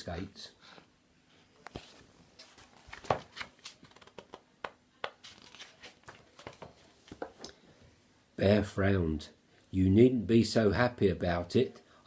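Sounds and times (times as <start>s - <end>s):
paper pages turning: 1.7s - 4.4s, 5.0s - 7.2s.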